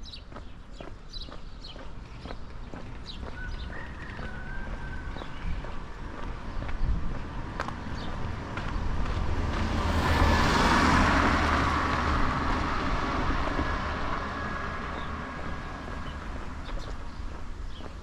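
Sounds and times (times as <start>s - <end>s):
wind rumbling on microphone: 3.3s - 18.0s
car passing by: 7.2s - 17.8s.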